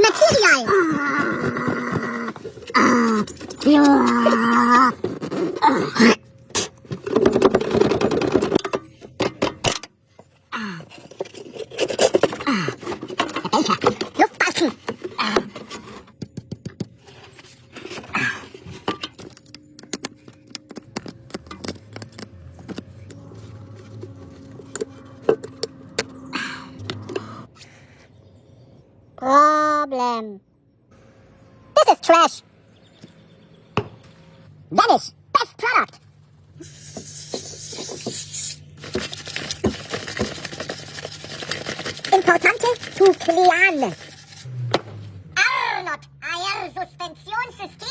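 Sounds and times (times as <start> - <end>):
aerosol spray can hissing: 36.6 - 38.6
rubbing and tapping: 36.6 - 44.5.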